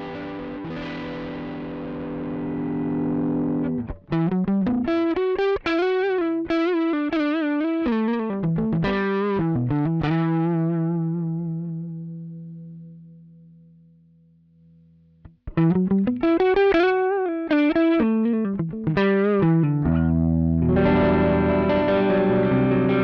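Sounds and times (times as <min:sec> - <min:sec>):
overdriven electric guitar: 0:00.0 - 0:13.8, 0:15.1 - 0:23.0.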